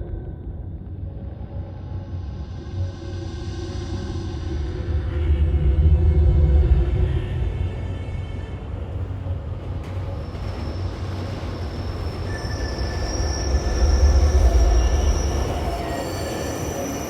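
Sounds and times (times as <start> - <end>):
subway train rumble: 0.8 - 17.0
high-pitched wheel squeal: 11.5 - 17.0.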